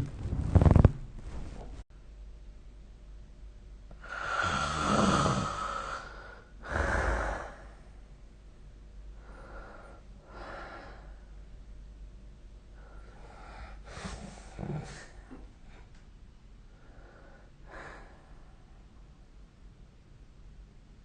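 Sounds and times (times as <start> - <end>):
loud breath: 4.0 - 7.8
person snoring: 4.0 - 7.8.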